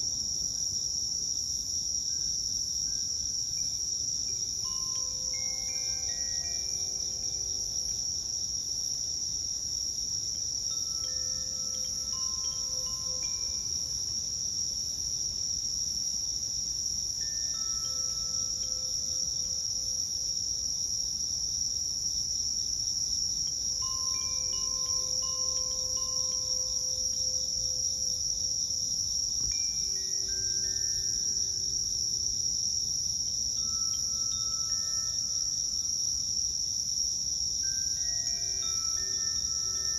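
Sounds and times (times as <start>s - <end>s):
high insect chorus: 0.0s - 39.9s
wind chime ringing: 4.3s - 8.1s, 10.6s - 14.4s, 17.2s - 19.9s, 23.5s - 32.0s, 33.4s - 36.3s, 37.6s - 39.9s.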